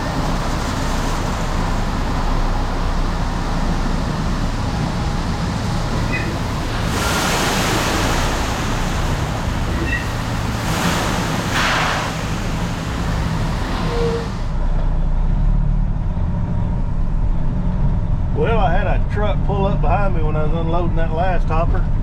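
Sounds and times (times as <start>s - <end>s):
truck engine rumbling: 0.0s - 22.0s
hiss: 6.1s - 14.5s.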